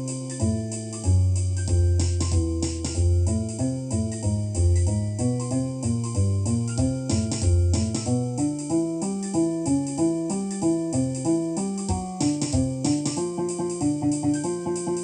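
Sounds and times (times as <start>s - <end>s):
bass line: 0.0s - 8.6s, 11.9s - 13.2s
jazz on electric piano: 0.0s - 15.0s.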